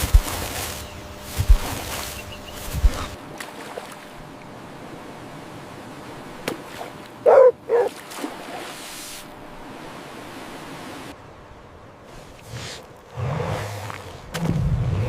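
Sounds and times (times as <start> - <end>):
dog barking: 7.2 - 7.9.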